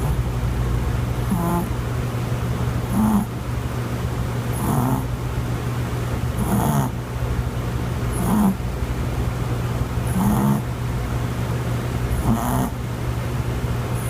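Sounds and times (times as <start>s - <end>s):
dog snoring: 0.0s - 0.2s, 1.2s - 1.8s, 2.8s - 3.4s, 4.5s - 5.1s, 6.4s - 7.0s, 8.1s - 8.6s, 10.0s - 10.7s, 12.1s - 12.8s.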